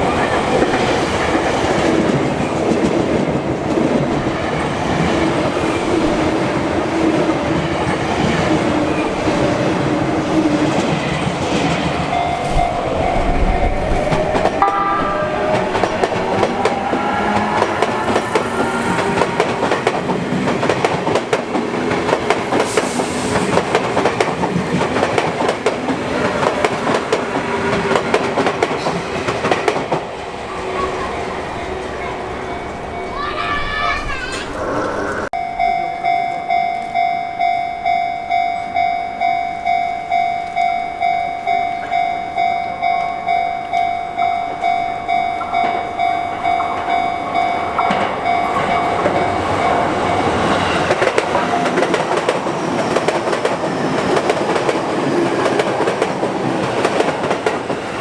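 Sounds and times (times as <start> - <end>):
train horn: 12.1 - 19.8
train wheels clacking over rail joints: 13.6 - 35.0, 45.4 - 58.0.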